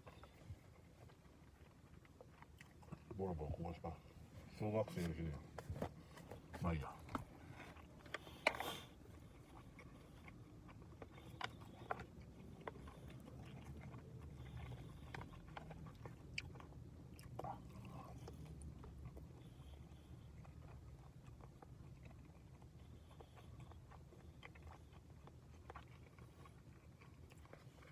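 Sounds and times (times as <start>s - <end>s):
man chewing: 0.0s - 3.2s, 5.6s - 27.9s.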